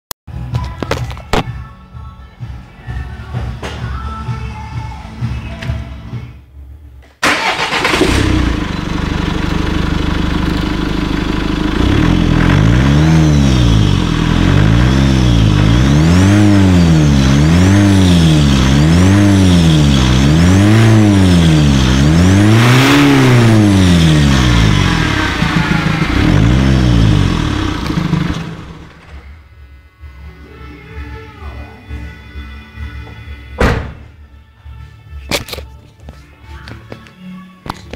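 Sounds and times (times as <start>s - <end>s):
car engine revving: 7.2s - 29.4s.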